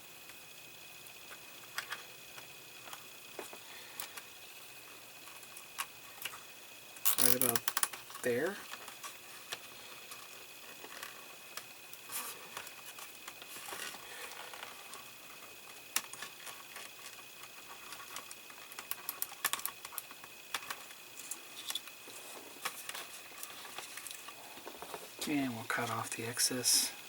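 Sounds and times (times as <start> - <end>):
plastic cable tie clicking: 7.1 - 8.0.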